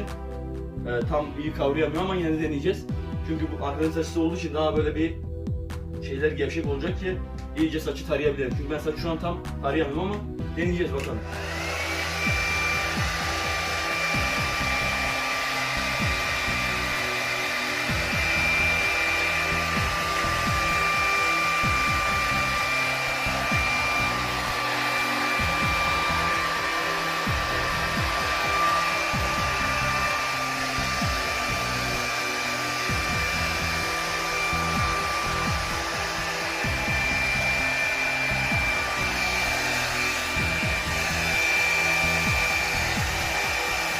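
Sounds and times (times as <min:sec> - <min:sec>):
background music: 0:00.0 - 0:43.9
hair dryer running: 0:10.6 - 0:43.9.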